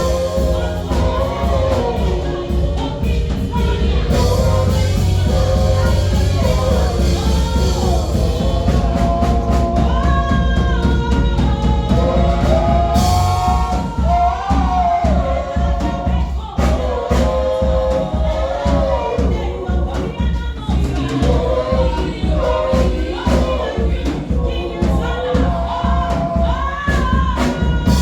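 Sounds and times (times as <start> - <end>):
heavy bass: 0.0 - 17.9
choir singing gospel song: 0.0 - 28.0
drum beat: 0.0 - 28.0.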